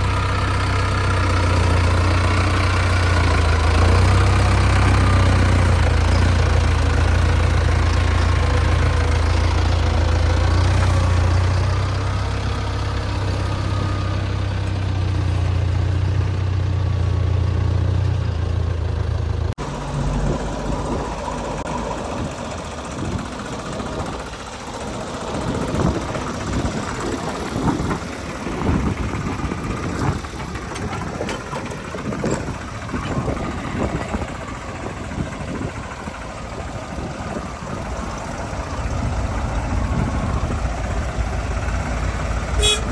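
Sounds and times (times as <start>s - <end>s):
diesel engine idling: 0.0s - 42.9s
engine running roughly in surges: 0.0s - 42.9s.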